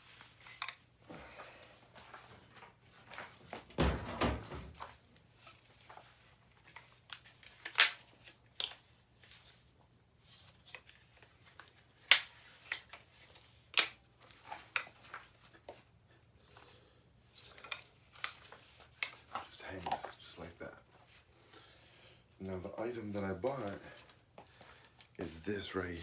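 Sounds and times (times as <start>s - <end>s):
gun handling rustle: 0.0s - 1.0s, 4.4s - 15.9s, 17.3s - 21.3s
gun clicks and knocks: 7.1s - 8.0s, 12.1s - 14.0s.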